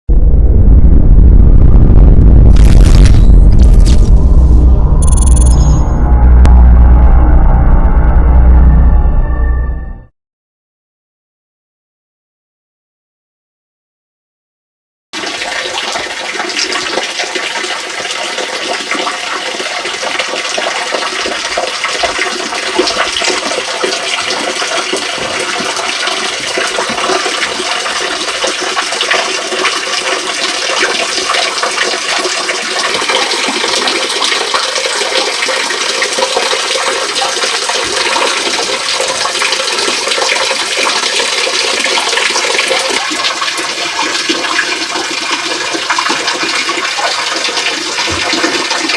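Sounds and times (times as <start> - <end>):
small waterfall splashing into pool: 15.2 - 48.9.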